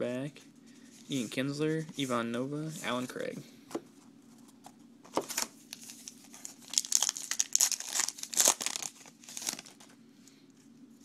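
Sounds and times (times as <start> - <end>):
wrapper crinkling: 5.3 - 9.9.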